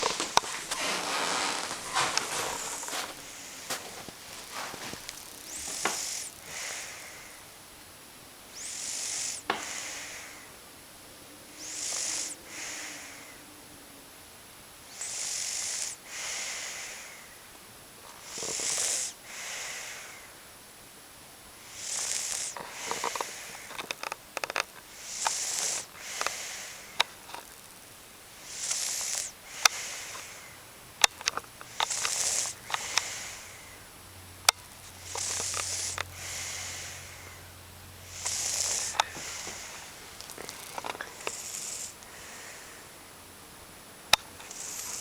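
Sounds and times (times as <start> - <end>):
sharp clicks and rustles: 0.0 - 6.2, 38.2 - 42.1
girl snoring: 0.0 - 7.5, 8.6 - 10.5, 11.6 - 13.4, 14.9 - 17.3, 18.2 - 20.3, 21.6 - 23.7, 24.9 - 27.0, 28.4 - 30.6, 31.7 - 33.8, 35.0 - 37.5, 38.1 - 42.9, 44.4 - 45.0.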